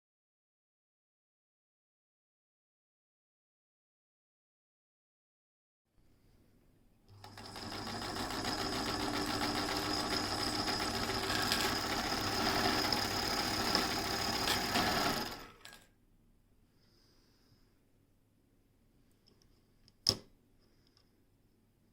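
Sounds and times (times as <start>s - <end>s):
sewing machine rattling: 7.2s - 15.8s.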